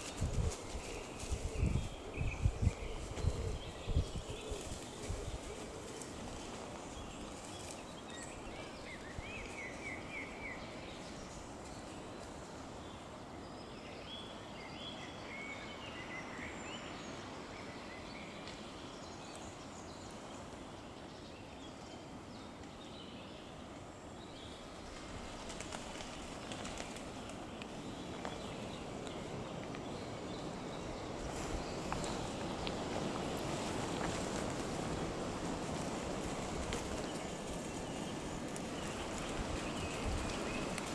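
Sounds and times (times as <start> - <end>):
small birds chirping: 0.0 - 12.3, 24.3 - 40.9.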